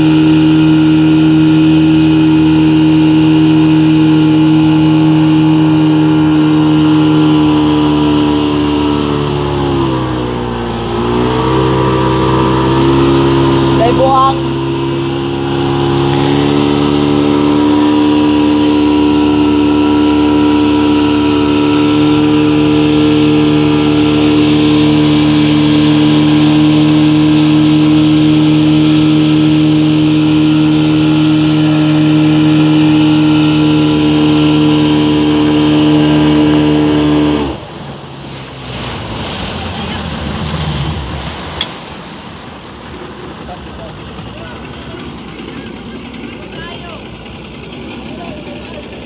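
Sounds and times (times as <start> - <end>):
motorboat engine humming: 0.0 - 49.0
water noise: 0.0 - 49.0.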